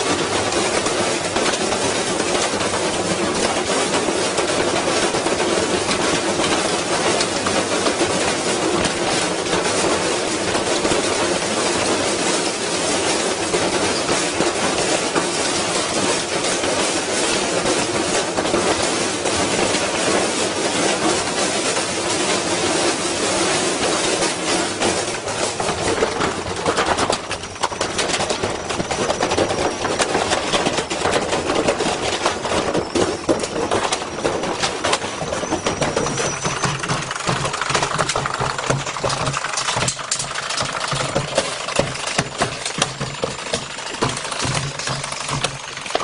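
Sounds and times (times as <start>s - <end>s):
washing machine drum banging: 0.0s - 46.0s.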